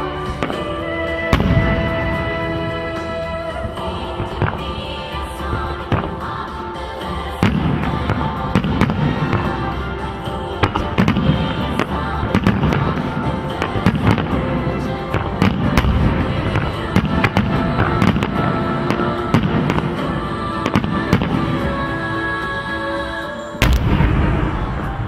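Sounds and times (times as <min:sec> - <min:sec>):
fireworks bangs and crackles: 0:00.0 - 0:21.8, 0:23.6 - 0:25.0
music: 0:00.0 - 0:25.0.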